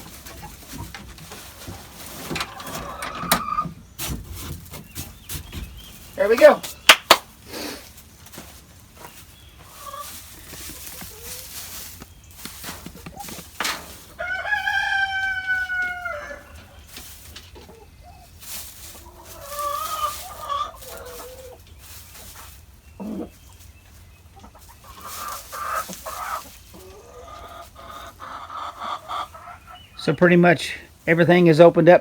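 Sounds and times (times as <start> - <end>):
chickens clucking: 0.0 - 32.0
chicken long drawn-out call: 14.2 - 16.6.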